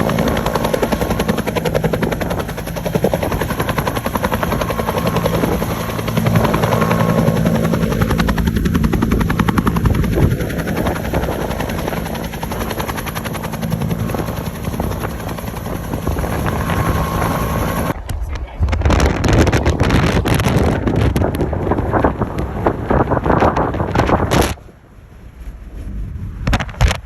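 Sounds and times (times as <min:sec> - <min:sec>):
helicopter rotor beating: 0:00.0 - 0:18.0, 0:19.0 - 0:24.6
engine humming: 0:00.0 - 0:18.1.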